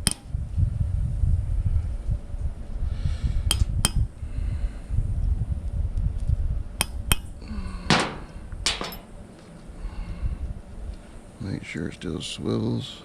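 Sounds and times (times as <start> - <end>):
metal clatter: 7.9 - 9.2
metal tools clinking: 7.9 - 9.2.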